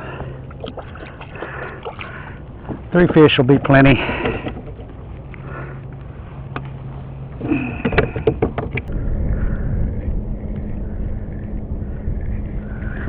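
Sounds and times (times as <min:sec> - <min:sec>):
low motor hum: 0:00.0 - 0:13.0
wind rumble on microphone: 0:07.7 - 0:13.0
sharp clicks and knocks: 0:07.8 - 0:08.9.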